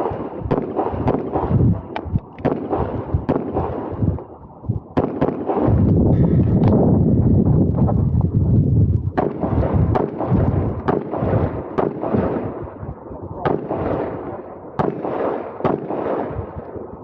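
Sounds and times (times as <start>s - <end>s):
low rumble: 0.0s - 17.0s
handgun shots: 14.8s - 16.3s.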